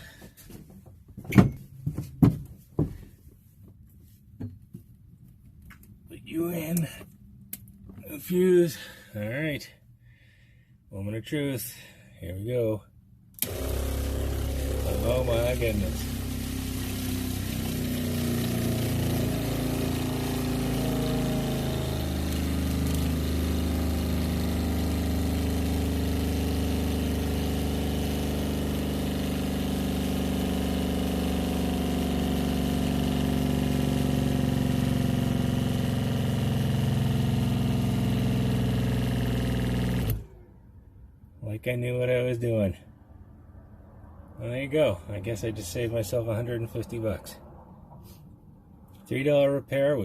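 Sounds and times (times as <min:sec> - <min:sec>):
water pump motor humming: 0:13.4 - 0:40.3.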